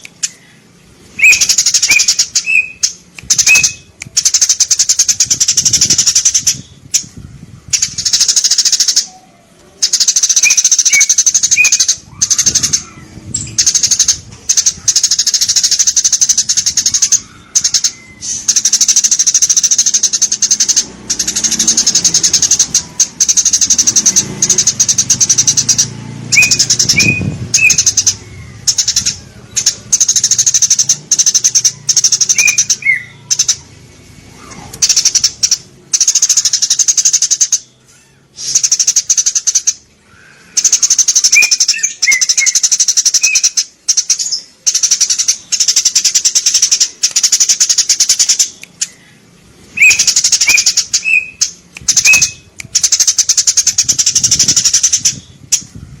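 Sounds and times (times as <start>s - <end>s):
sparrows chirping: 0.0s - 56.0s.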